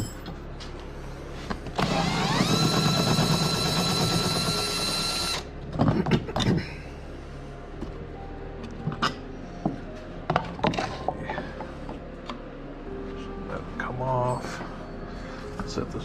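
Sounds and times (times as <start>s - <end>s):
cordless drill whining: 1.8s - 5.5s.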